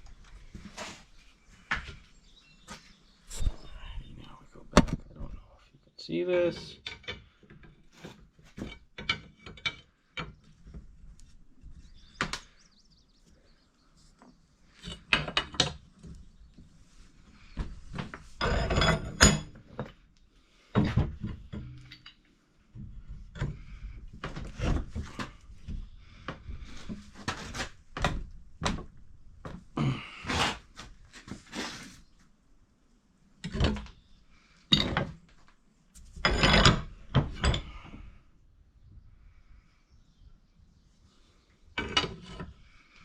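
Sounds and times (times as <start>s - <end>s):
tools knocking and scraping on metal: 6.6s - 10.6s, 17.7s - 20.0s, 20.7s - 28.9s, 36.2s - 37.8s.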